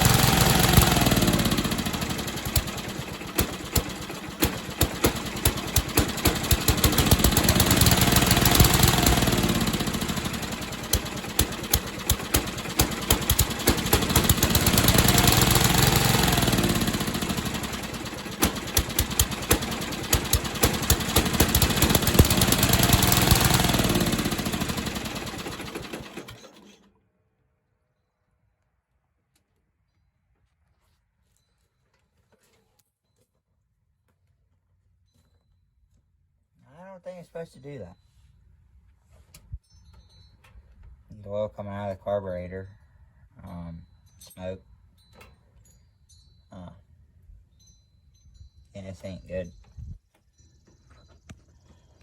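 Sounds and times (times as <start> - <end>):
engine popping: 0.0 - 26.6
lawnmower engine running rough: 0.0 - 26.9.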